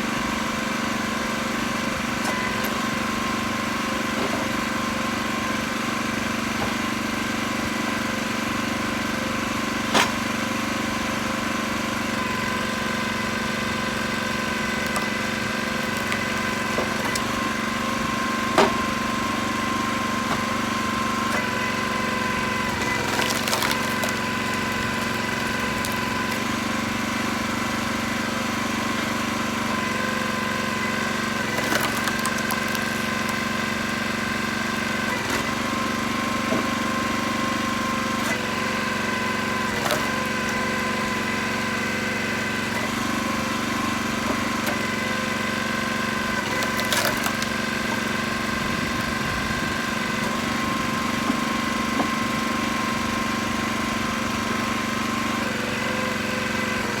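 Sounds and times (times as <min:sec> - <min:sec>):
engine idling: 0:00.0 - 0:57.0
firewood logs dropping: 0:12.0 - 0:53.9.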